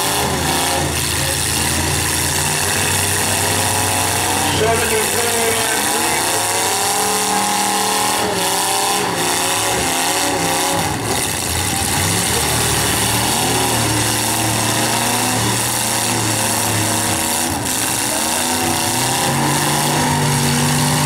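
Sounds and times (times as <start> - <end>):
car engines revving: 0.0 - 21.0.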